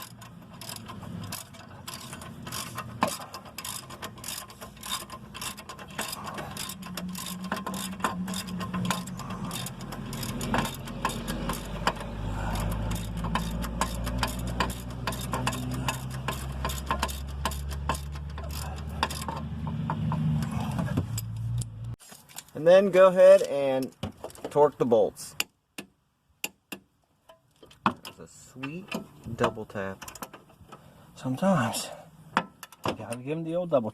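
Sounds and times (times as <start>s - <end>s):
ratchet wrench clicking: 0.0s - 21.7s.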